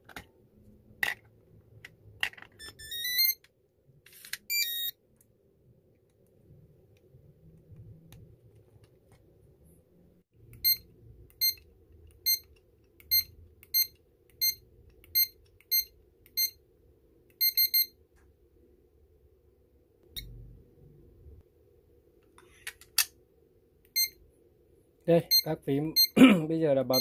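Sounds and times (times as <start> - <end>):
door lock keypad beeps: 2.6 - 3.4, 4.5 - 4.9.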